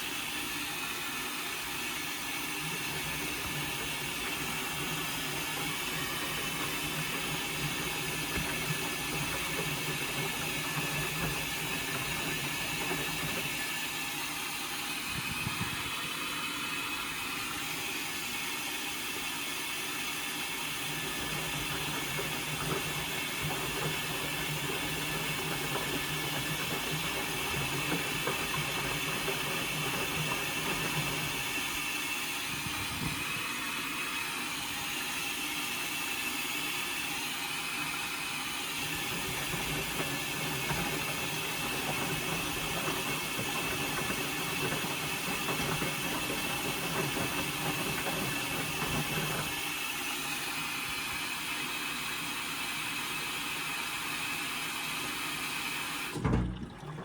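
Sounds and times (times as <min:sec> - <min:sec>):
washing machine drum tumbling: 0:02.4 - 0:16.2, 0:20.6 - 0:33.4, 0:38.7 - 0:49.9, 0:56.1 - 0:57.0.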